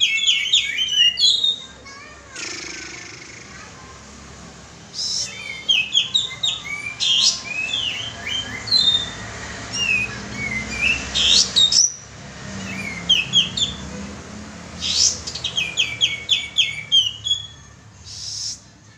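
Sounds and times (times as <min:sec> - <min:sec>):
bird chirping: 0:00.0 - 0:01.7, 0:02.4 - 0:03.9, 0:04.9 - 0:13.9, 0:14.8 - 0:18.7.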